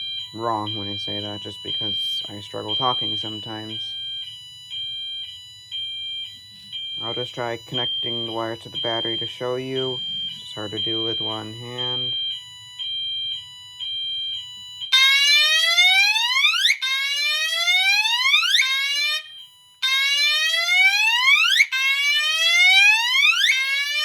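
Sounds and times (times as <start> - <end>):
steady beeping tone: 0.0 - 15.9
fire alarm horn whooping: 0.0 - 24.0.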